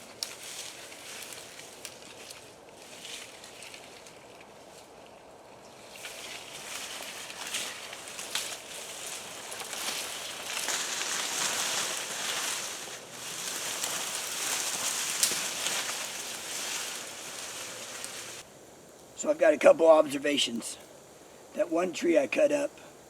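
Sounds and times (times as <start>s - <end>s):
campfire hissing and crackling: 0.0s - 23.0s
wood popping: 6.0s - 18.4s.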